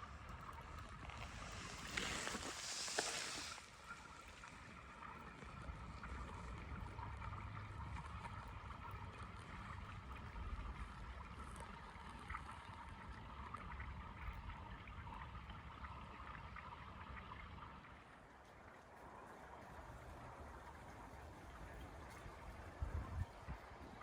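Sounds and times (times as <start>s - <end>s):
faint ticks: 0.0s - 14.3s
small waves lapping against ice: 0.0s - 24.0s.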